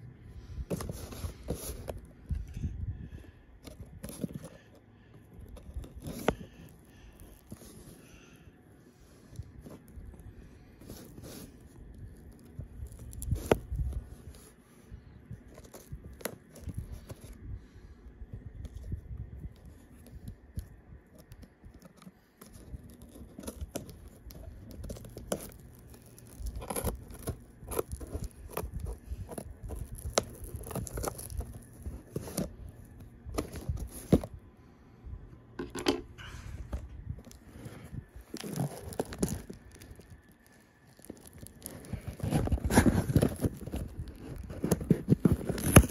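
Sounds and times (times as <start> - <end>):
packaging tearing and crinkling: 10.8 - 14.5, 18.7 - 34.3, 37.2 - 45.9.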